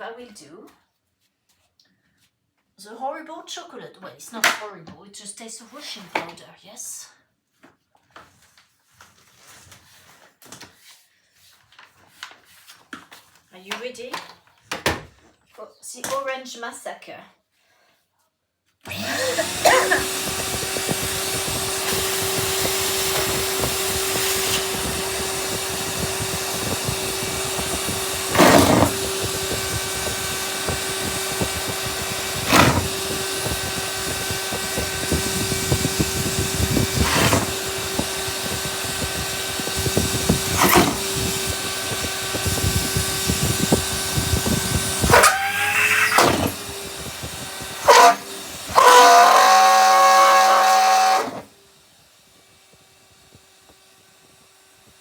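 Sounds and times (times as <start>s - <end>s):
vacuum cleaner motor whine: 18.9s - 55.0s
rubber squealing in nozzle: 19.1s - 22.2s, 23.1s - 37.8s, 44.6s - 46.7s, 47.7s - 51.4s
rubber pieces sucked into hose: 19.1s - 51.5s.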